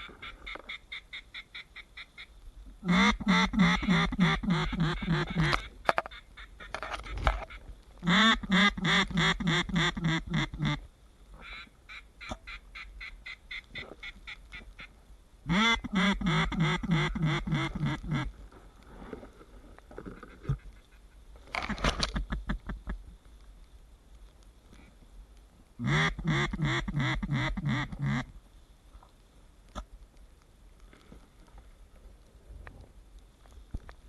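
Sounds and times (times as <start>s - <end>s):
duck quacking descending: 2.8s - 5.6s, 15.5s - 18.3s, 25.8s - 28.3s.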